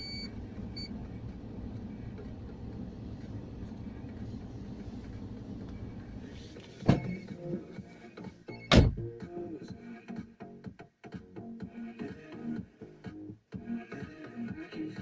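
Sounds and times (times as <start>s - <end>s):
car engine and road noise: 0.0s - 9.2s.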